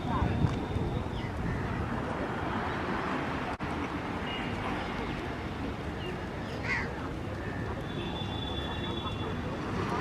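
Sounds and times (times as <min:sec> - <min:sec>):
wind rumble on microphone: 0:00.0 - 0:02.5.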